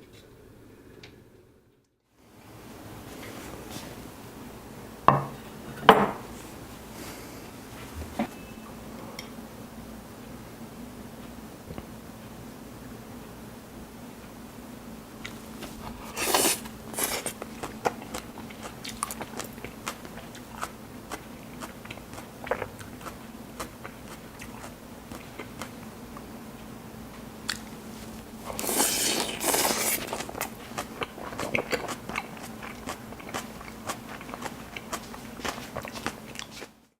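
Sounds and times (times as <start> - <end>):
chewing crunchy salad: 15.2 - 26.3, 27.4 - 36.9.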